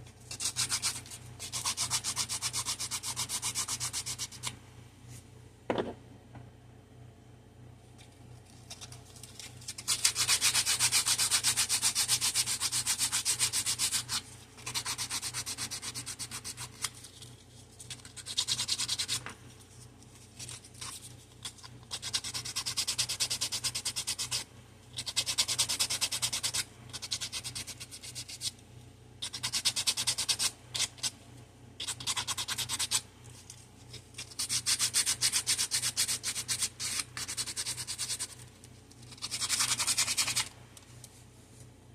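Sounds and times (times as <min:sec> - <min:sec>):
sandpaper rubbing: 0:00.3 - 0:04.4, 0:09.6 - 0:17.2, 0:34.2 - 0:38.4, 0:39.1 - 0:40.5.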